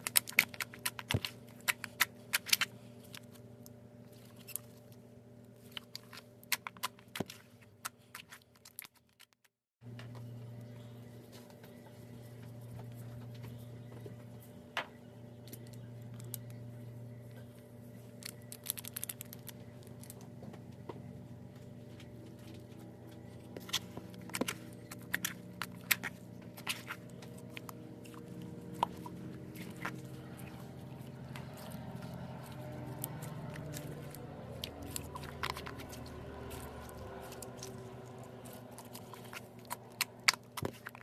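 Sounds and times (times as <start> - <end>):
steady low hum: 0.0 - 8.6, 9.8 - 41.0.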